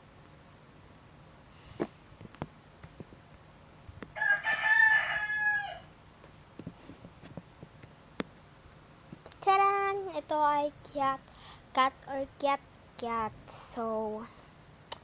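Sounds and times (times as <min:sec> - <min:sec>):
rooster crowing: 0:04.1 - 0:05.9.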